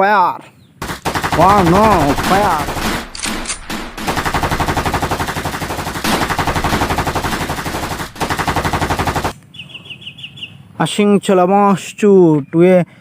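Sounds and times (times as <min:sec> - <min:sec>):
toy gun machine-gun effect: 0:00.9 - 0:09.3.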